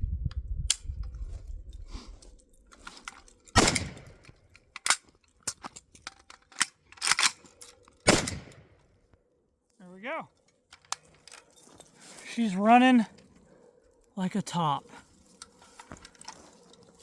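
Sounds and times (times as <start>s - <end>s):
rifle action metallic clicks: 2.6s - 8.7s, 10.7s - 11.6s
rifle shots: 3.6s - 4.2s, 8.0s - 8.7s.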